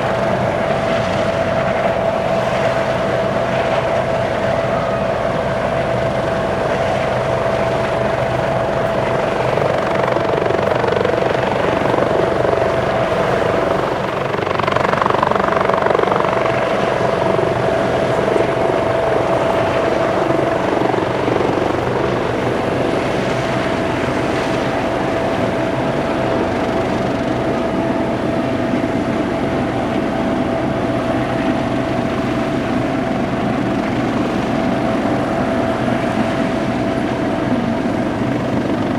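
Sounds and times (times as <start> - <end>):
helicopter rotor and turbine noise: 0.0 - 38.9
high turbine whine: 0.0 - 38.9.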